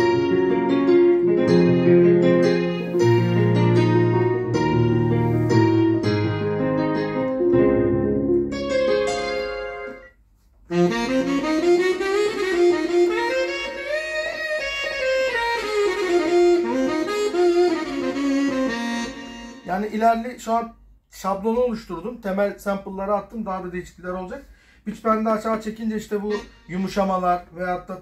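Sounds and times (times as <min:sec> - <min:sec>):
keyboard melody with pitch bends: 0:00.0 - 0:20.0, 0:26.1 - 0:27.2
keyboard piano notes: 0:00.0 - 0:20.2.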